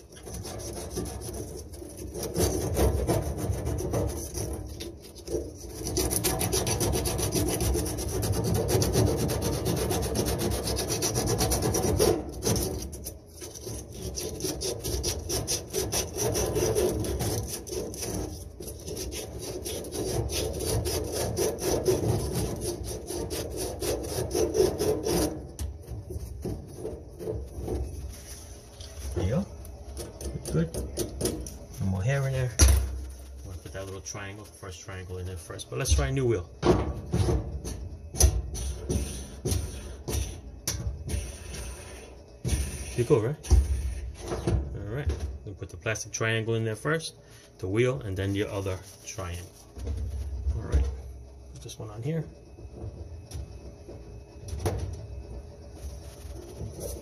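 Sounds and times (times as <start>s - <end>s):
emery cloth rasping on metal shaft: 0.0s - 36.3s, 37.6s - 44.3s.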